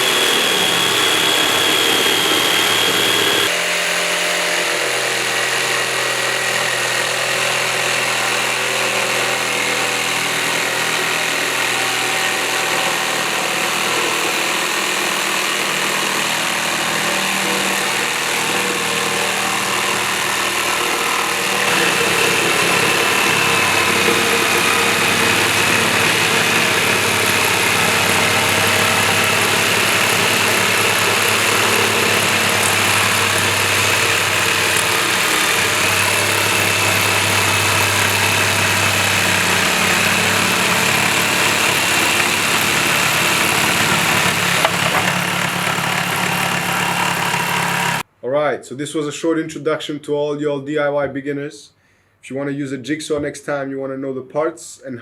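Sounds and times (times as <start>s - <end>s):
electric jigsaw cutting wood: 0.0s - 48.1s.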